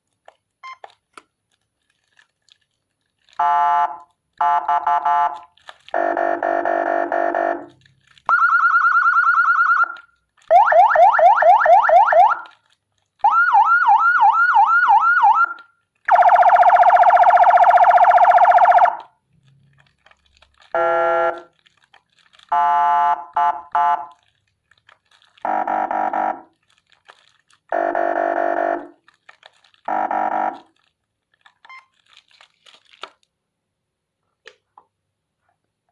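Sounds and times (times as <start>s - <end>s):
electronic siren tones: 13.3s - 19.0s.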